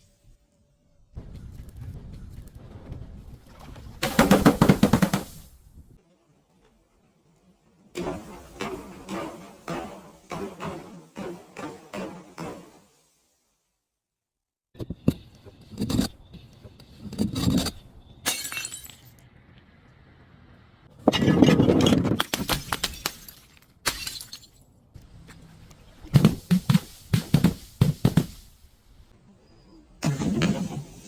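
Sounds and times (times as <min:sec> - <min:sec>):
glass crushing and cracking: 0:18.3 - 0:19.2, 0:22.4 - 0:24.6.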